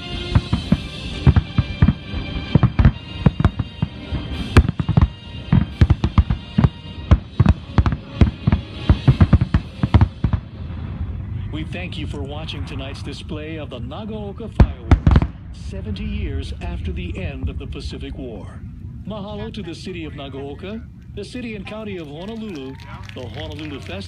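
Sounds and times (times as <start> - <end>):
fireworks bursting: 0.0 - 11.1, 11.8 - 18.2, 19.1 - 24.0
background music: 0.0 - 17.7.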